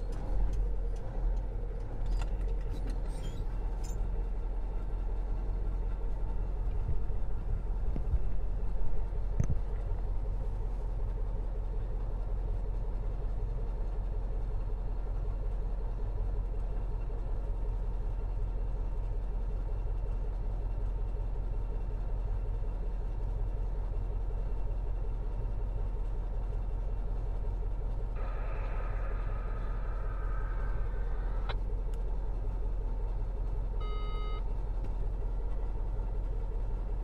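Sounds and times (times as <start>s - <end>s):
truck engine rumble: 0.0s - 37.0s.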